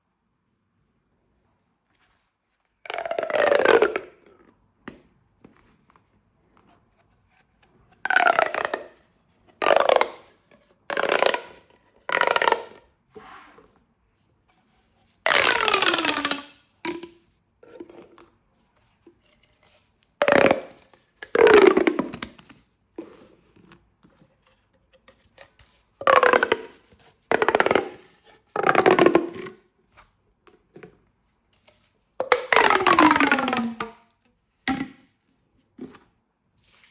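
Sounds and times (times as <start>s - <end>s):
plastic pop tubes buzzing: 15.3s - 17.2s, 32.2s - 34.0s.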